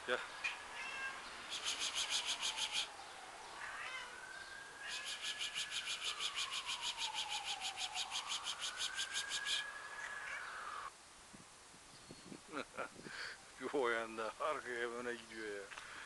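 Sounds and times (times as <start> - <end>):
person making hissing calls: 1.5 - 2.9, 4.8 - 10.9.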